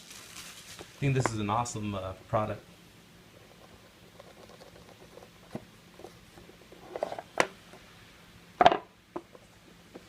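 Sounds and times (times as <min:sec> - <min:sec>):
wrapper crackle: 0:00.0 - 0:01.0
card pack crinkling: 0:00.0 - 0:01.2.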